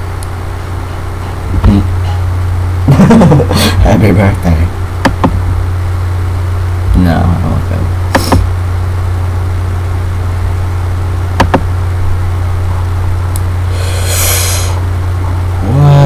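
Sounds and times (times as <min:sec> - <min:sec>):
low electrical hum: 0:00.0 - 0:16.0
sharp click: 0:05.0 - 0:05.4, 0:08.1 - 0:08.5, 0:11.4 - 0:11.7.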